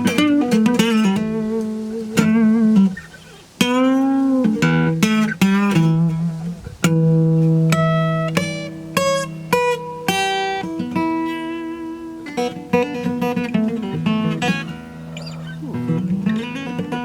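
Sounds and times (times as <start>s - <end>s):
guitar plucked notes: 0.0s - 17.0s.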